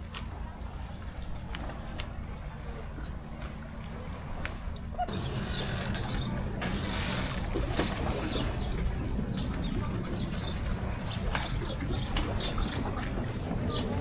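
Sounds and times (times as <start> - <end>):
small birds chirping: 5.1 - 14.0.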